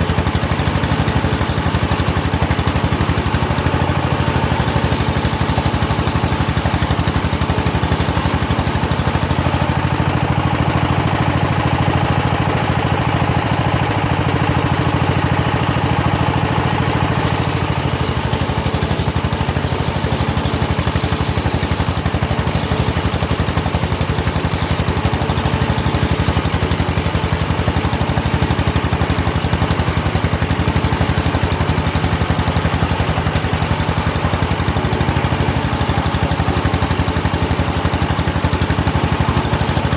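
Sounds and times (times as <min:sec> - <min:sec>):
sawmill engine running: 0:00.0 - 0:39.9
saw blade hissing through wood: 0:00.2 - 0:09.7, 0:15.9 - 0:26.2.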